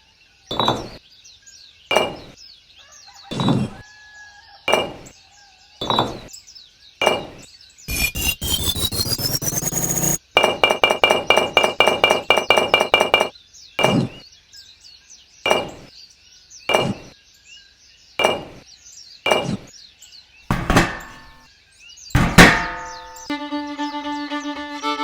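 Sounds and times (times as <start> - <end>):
ringing pitched tone: 7.1 - 14.1.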